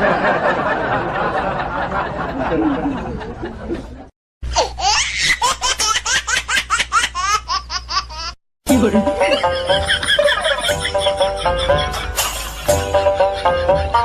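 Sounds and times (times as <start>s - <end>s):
laughter: 0.0s - 4.1s, 9.2s - 14.0s
high-pitched squeaky laughs: 9.2s - 14.0s.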